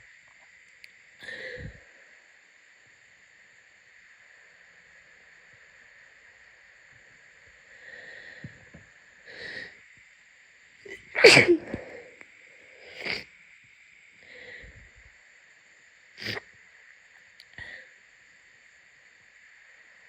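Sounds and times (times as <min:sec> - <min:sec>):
faint steady hiss: 0:00.0 - 0:20.0
noisy breath in: 0:01.2 - 0:02.3, 0:07.6 - 0:09.9, 0:11.6 - 0:13.3, 0:14.2 - 0:15.1
person sneezing into blanket: 0:11.2 - 0:12.0.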